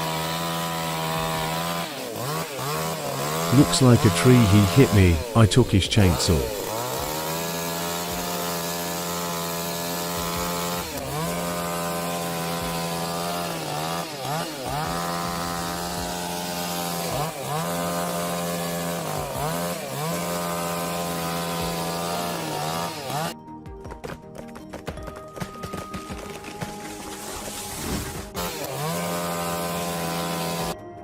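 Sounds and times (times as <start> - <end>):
chainsaw cutting tree: 0.0 - 23.4, 24.8 - 31.0.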